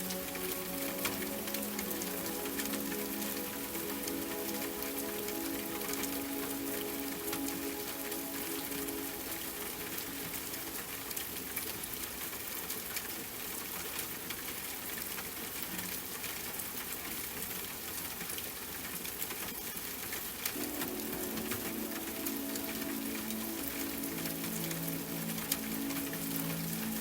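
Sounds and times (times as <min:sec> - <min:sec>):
soft sustained music tones: 0:00.0 - 0:12.0, 0:20.6 - 0:27.0
steady rain: 0:00.0 - 0:27.0.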